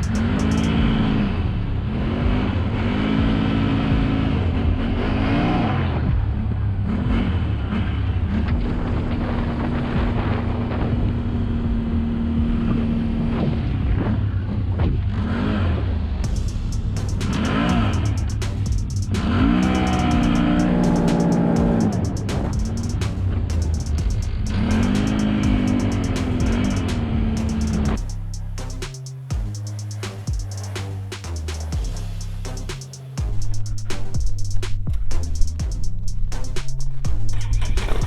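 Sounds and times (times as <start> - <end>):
atv engine revving: 16.8 - 32.8.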